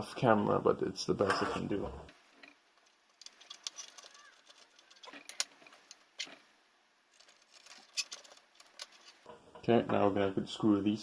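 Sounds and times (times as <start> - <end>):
metal and plastic parts clicking: 2.3 - 9.3.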